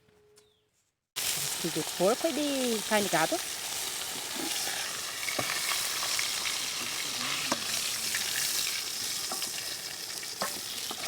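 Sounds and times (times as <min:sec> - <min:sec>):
meat sizzling: 0:01.2 - 0:11.0.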